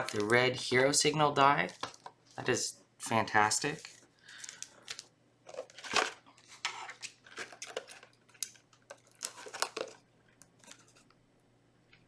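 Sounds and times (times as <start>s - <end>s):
card box packaging crinkling: 0.0s - 0.8s, 1.6s - 2.5s, 3.4s - 10.0s.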